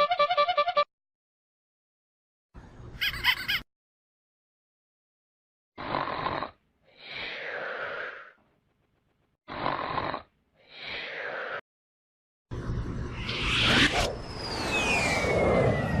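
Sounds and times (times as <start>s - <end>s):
person snoring: 5.8s - 8.4s, 9.5s - 11.6s.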